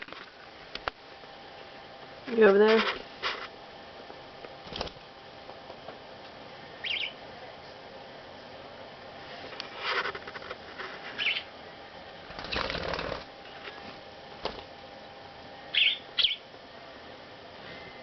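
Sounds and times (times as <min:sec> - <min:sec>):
wing flapping: 0:04.6 - 0:05.1, 0:12.3 - 0:14.8
budgerigars chirping: 0:06.8 - 0:07.2, 0:11.2 - 0:11.5, 0:15.7 - 0:16.4.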